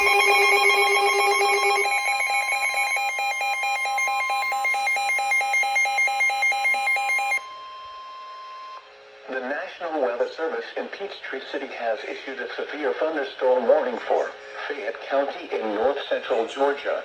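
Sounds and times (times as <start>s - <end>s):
two-tone electronic alarm pulsing: 0.0s - 8.8s.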